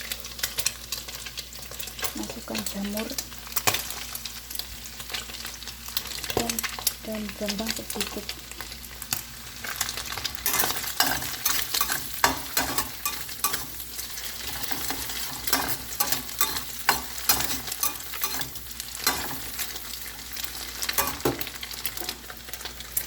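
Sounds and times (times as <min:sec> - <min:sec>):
vegetables sizzling in oil: 0:00.0 - 0:23.0
utensil scraping a pot: 0:10.2 - 0:20.2.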